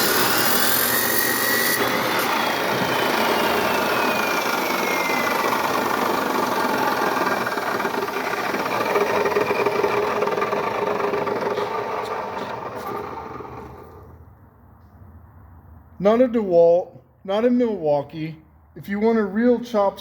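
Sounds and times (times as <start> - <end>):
electric chop saw running: 0.0 - 14.2.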